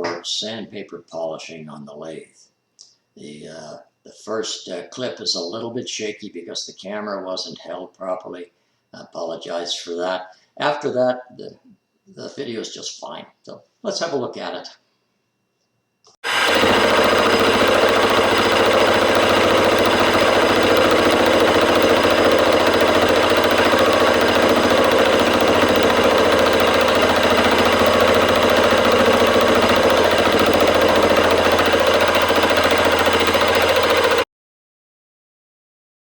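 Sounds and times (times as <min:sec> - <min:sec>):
machine tool motor hum: 0:16.2 - 0:34.2.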